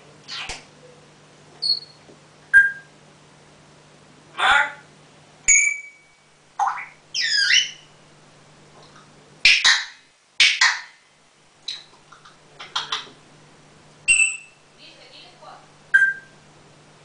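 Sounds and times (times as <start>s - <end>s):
parrot whistles and squawks: 0.3s - 0.6s, 1.6s - 2.0s, 2.6s - 2.9s, 5.5s - 7.9s, 9.5s - 11.0s, 14.1s - 14.6s, 15.9s - 16.3s.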